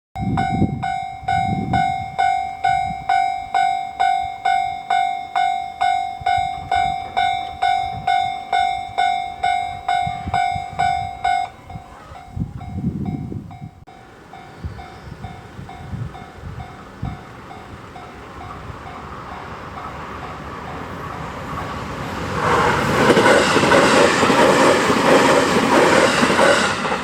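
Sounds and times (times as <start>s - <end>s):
level-crossing warning bell: 0.2s - 21.4s.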